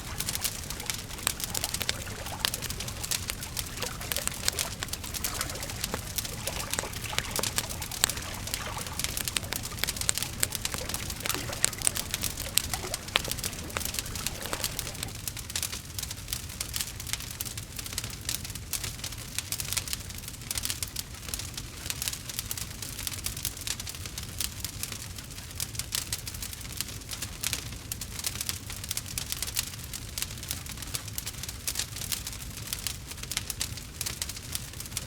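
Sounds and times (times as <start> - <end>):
wood fire crackling: 0.0 - 15.4.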